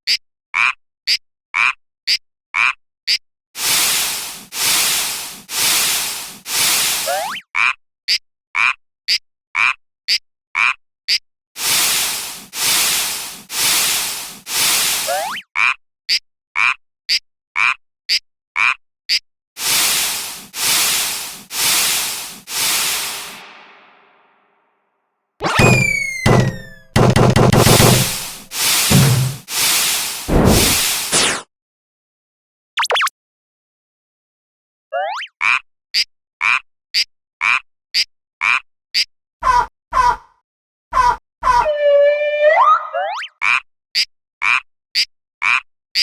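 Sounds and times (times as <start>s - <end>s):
hissing bursts: 3.6s - 7.3s, 11.6s - 15.3s, 19.6s - 23.6s, 25.4s - 31.4s
alternating ticks and tones: 25.4s - 28.4s.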